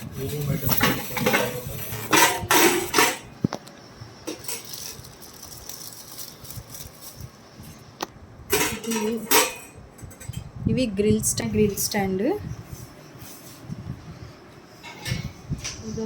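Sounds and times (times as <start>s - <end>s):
packaging rustling: 4.3s - 7.5s.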